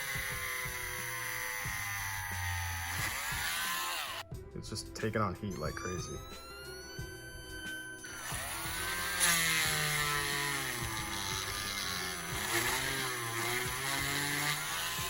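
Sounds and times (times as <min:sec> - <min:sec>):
power drill boring into plastic: 0:00.0 - 0:04.2, 0:08.0 - 0:15.0.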